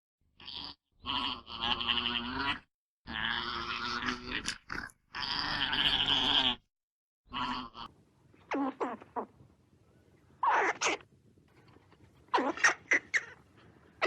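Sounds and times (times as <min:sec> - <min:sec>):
animal crying: 0:07.3 - 0:07.9, 0:10.4 - 0:11.0, 0:12.3 - 0:13.4.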